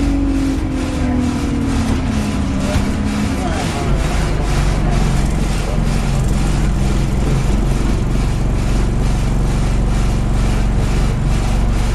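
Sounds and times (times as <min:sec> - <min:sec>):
bus engine running: 0:00.0 - 0:11.9
loud regular ticking: 0:00.0 - 0:11.9.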